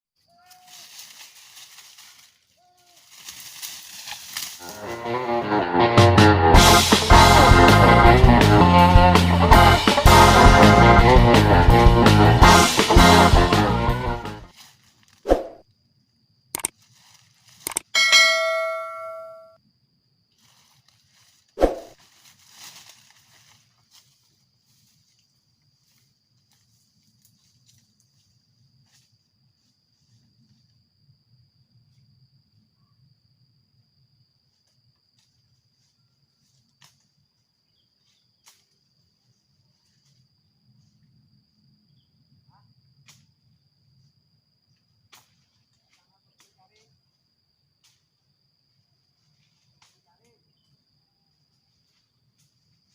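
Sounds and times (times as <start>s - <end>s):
faint high insect trill: 0.2s - 5.2s, 14.5s - 52.9s
short clicks: 17.6s - 17.9s
metallic bell-like ding: 18.0s - 19.6s.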